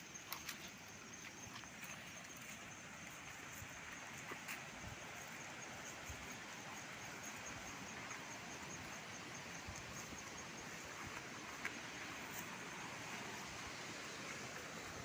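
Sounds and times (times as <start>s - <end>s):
steady hiss: 0.0s - 15.0s.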